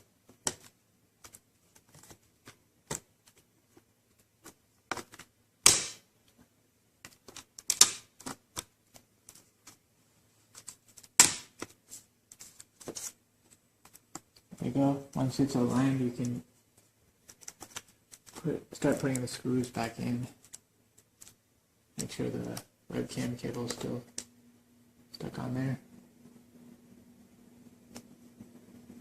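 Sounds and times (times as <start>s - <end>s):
loud plastic snaps: 7.0s - 8.7s, 11.0s - 11.7s.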